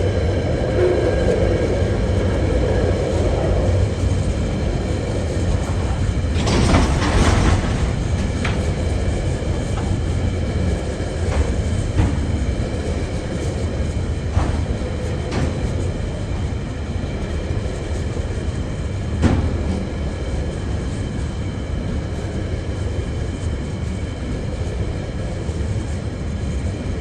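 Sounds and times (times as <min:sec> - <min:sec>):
rush of noise: 0:00.0 - 0:21.2
train wagons rumbling: 0:00.0 - 0:27.0
wheels clicking over rail joints: 0:05.4 - 0:12.2.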